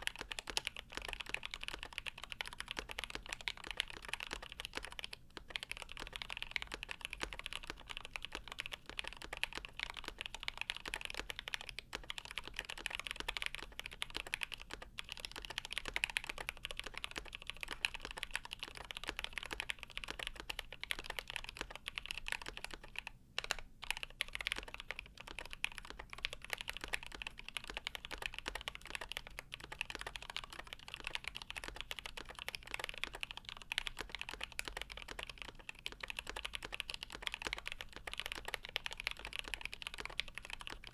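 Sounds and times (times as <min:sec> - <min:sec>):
fast typing on mechanical keyboard: 0:00.0 - 0:40.9.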